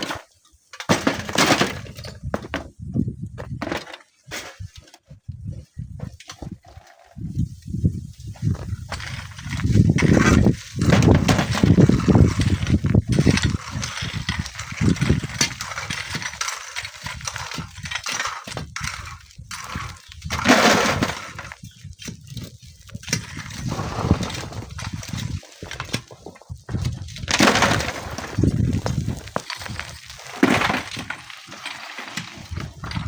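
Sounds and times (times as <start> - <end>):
wind gusting over microphone: 5.2 - 16.1, 18.8 - 30.2.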